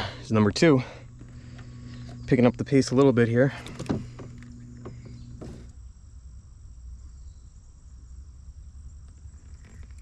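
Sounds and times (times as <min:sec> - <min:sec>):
insects chorus: 0:00.0 - 0:10.0.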